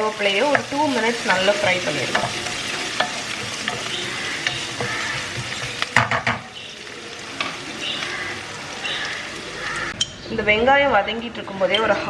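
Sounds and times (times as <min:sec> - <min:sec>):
vegetables sizzling in hot oil: 0:00.0 - 0:10.0
utensil clicking and scraping pan: 0:01.5 - 0:06.4.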